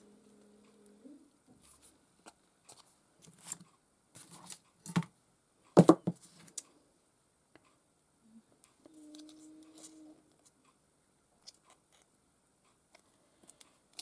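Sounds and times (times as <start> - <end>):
clicks and rustles of handling paper: 1.6 - 5.1.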